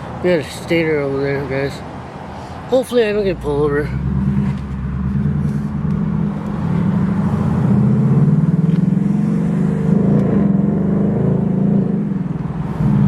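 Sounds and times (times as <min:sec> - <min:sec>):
car engine running: 0:03.3 - 0:13.0.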